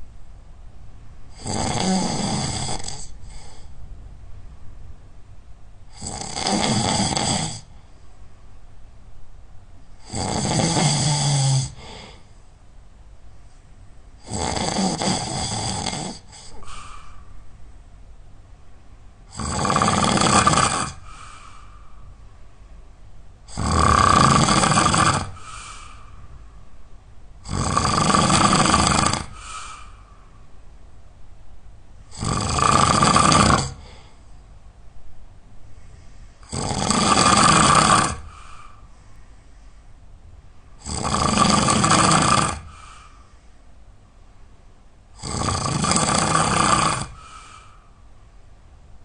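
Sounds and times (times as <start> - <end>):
person snoring loudly: 1.3 - 3.6, 5.9 - 7.7, 10.0 - 12.2, 14.2 - 17.0, 19.3 - 21.3, 23.5 - 25.9, 27.4 - 29.9, 32.1 - 34.1, 36.4 - 38.6, 40.8 - 43.0, 45.2 - 47.7.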